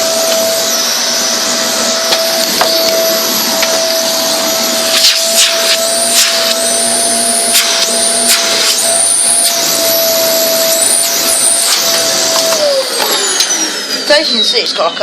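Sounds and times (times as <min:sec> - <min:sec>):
vacuum cleaner whining: 0:00.0 - 0:15.0
sharp motor pops: 0:04.9 - 0:06.6, 0:07.5 - 0:08.8.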